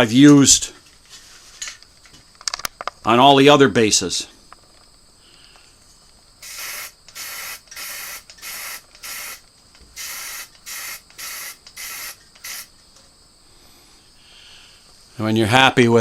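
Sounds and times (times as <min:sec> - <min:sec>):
spray paint can hissing: 0:06.4 - 0:12.7.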